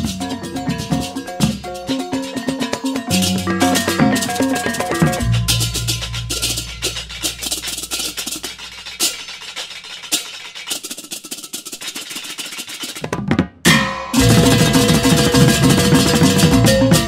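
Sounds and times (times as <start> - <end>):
fast dense percussion: 0.0 - 17.0
low sustained bass: 3.1 - 9.0.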